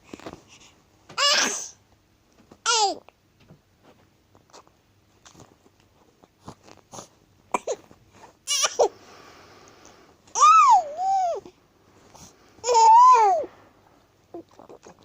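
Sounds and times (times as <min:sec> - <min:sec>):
baby whimpering cries: 0:01.2 - 0:01.7, 0:10.3 - 0:11.5, 0:12.6 - 0:13.5.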